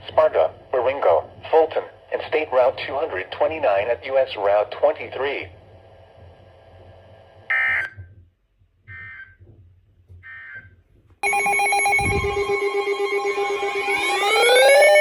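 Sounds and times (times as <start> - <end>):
pulsing electronic alert tone: 11.2 - 15.0.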